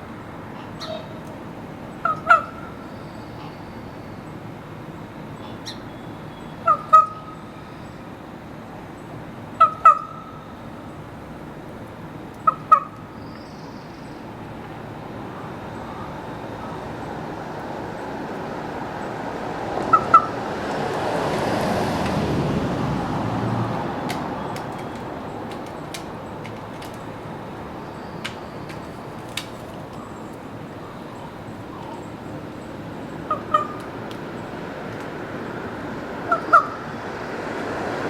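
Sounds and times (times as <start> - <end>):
low rush of background noise: 0.0 - 38.0
raven squawking: 0.5 - 1.2, 2.0 - 3.7, 6.6 - 7.4, 9.6 - 10.4, 12.4 - 13.1, 15.3 - 17.0, 19.8 - 20.5, 33.1 - 34.0, 36.3 - 36.9.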